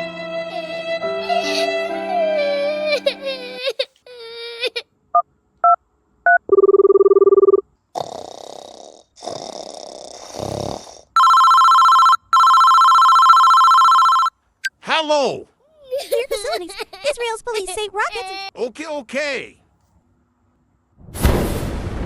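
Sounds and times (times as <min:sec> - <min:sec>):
steady dial tone: 0:06.3 - 0:07.6, 0:11.2 - 0:14.3
electronic ringtone: 0:11.2 - 0:14.3.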